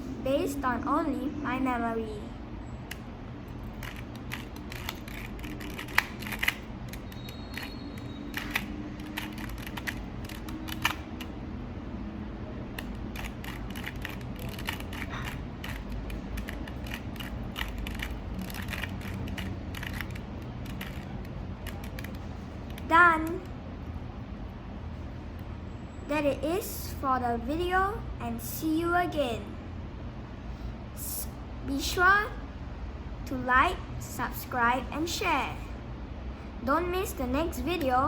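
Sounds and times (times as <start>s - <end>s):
puzzle cube plastic clicks: 3.6s - 11.3s, 12.8s - 22.9s.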